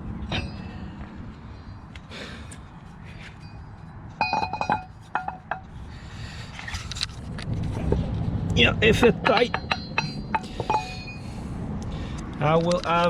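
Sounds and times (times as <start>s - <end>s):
metallic clinks: 3.3s - 5.7s, 9.2s - 11.3s.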